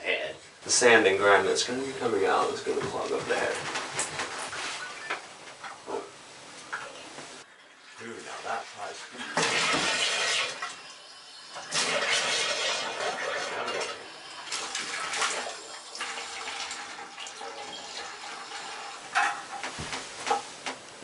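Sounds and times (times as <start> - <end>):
water running hard from pipe: 7.9 - 19.7.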